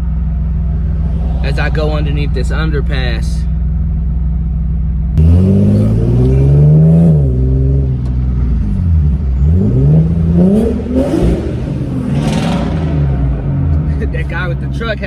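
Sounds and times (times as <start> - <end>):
car engine revving: 0.0 - 15.0.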